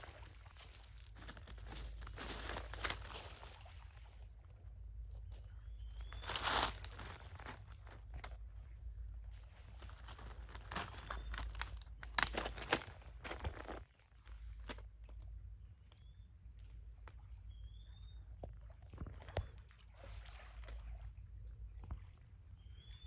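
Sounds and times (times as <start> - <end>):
crinkling and crunching handling: 0.0 - 3.8, 5.1 - 8.5, 9.3 - 15.2.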